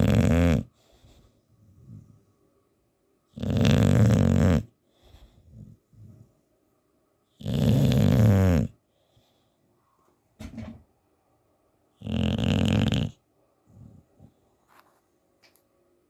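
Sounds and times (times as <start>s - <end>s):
dog snoring: 0.0s - 2.2s, 3.3s - 6.2s, 7.4s - 8.8s, 12.0s - 14.3s
dog breathing softly: 0.6s - 2.4s, 4.8s - 6.6s, 8.8s - 9.8s.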